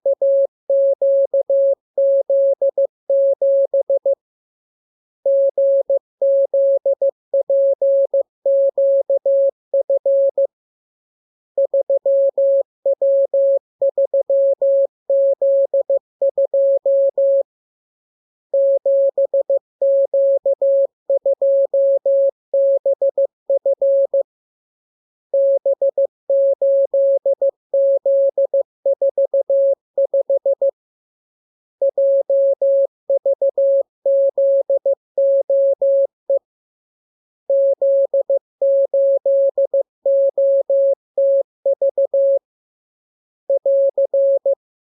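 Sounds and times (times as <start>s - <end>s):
morse code beeps: 5.3s - 10.5s, 37.5s - 42.4s, 43.5s - 44.6s.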